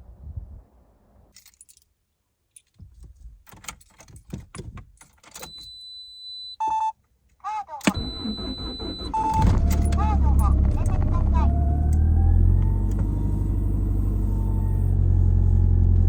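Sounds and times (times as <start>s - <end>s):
car keys jangling: 1.3s - 5.8s
short lower beep: 7.9s - 10.5s
car engine running: 8.0s - 16.0s.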